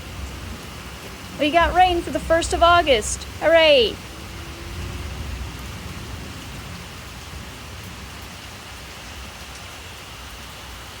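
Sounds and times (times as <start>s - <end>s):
heavy rain falling: 0.0s - 11.0s.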